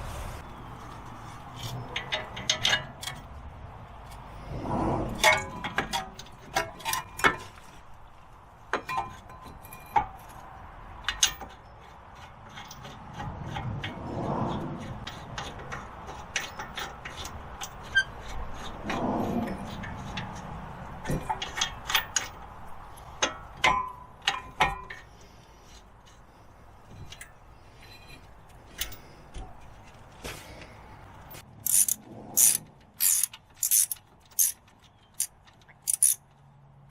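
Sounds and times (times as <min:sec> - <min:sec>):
metal tools clinking and knocking: 0:01.6 - 0:03.3, 0:08.7 - 0:10.4, 0:11.0 - 0:13.6, 0:14.9 - 0:18.7, 0:21.0 - 0:25.2, 0:31.3 - 0:36.4.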